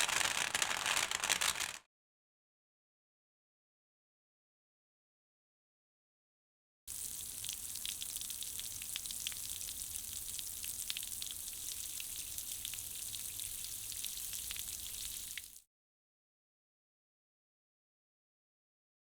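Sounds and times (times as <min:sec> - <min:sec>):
rain-like pattering hiss: 0:06.9 - 0:15.6.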